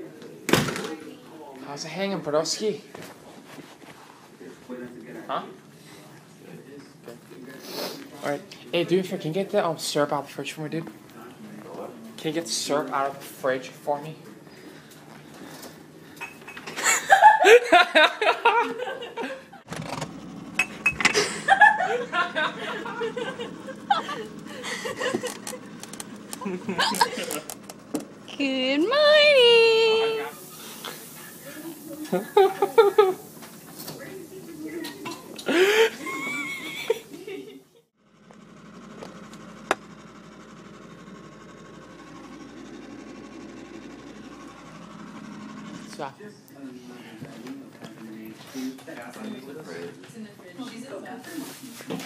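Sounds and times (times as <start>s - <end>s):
people laughing and snickering: 16.7s - 19.7s, 21.1s - 27.7s, 31.7s - 33.4s, 35.4s - 37.8s
low mechanical hum: 19.6s - 31.5s, 38.0s - 46.2s.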